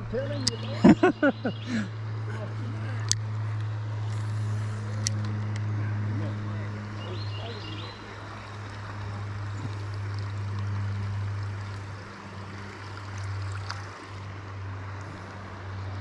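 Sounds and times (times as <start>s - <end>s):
low hum: 0.0s - 16.0s
river current rushing: 3.2s - 16.0s.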